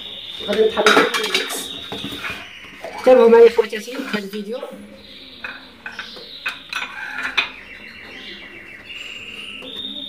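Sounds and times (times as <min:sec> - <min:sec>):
kitchen utensils clinking: 0:00.0 - 0:04.6, 0:05.4 - 0:08.1
faint high chirping: 0:00.0 - 0:10.0
steady high tone: 0:02.6 - 0:06.0.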